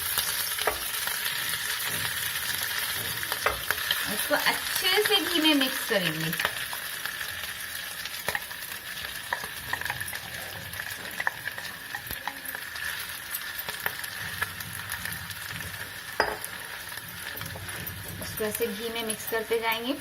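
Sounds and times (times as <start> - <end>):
potato sizzling in a pan: 0.0 - 20.0
spoon scraping a pan: 8.2 - 19.7.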